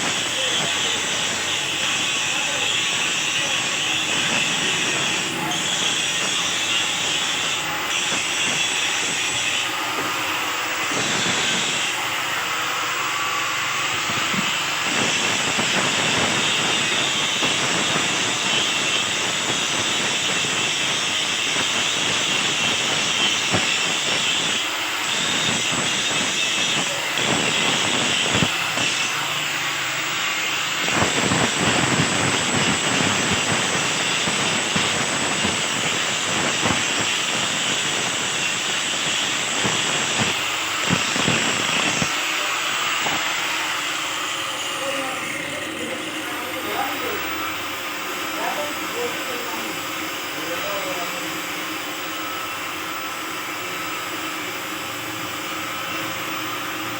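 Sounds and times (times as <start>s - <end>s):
welding arc crackling and hissing: 0.0s - 56.9s.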